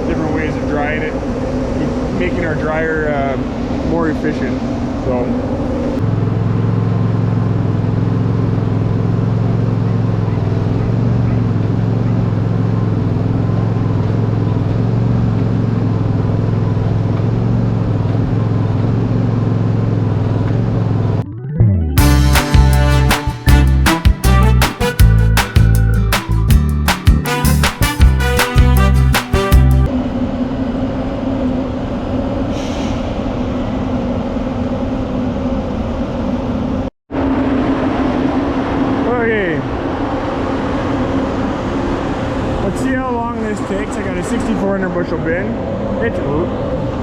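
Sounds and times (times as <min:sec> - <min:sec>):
engine pulsing drone: 0:00.0 - 0:24.5.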